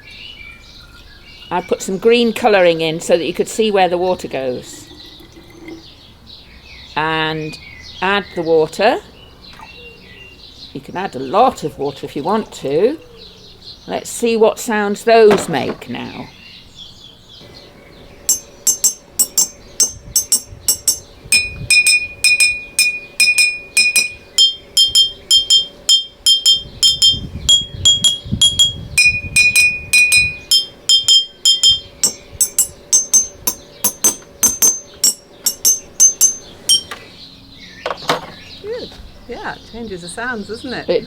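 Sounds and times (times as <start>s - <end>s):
glass jars tapped and ringing: 18.3s - 37.0s.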